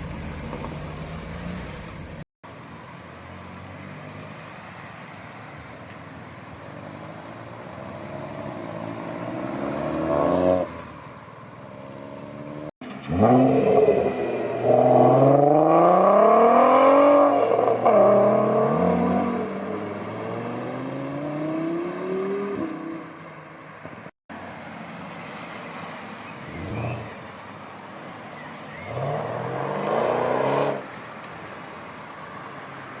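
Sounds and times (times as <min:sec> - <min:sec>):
engine revving: 0:12.4 - 0:23.1, 0:26.5 - 0:27.2, 0:28.8 - 0:30.8
car engine accelerating hard: 0:28.8 - 0:30.8.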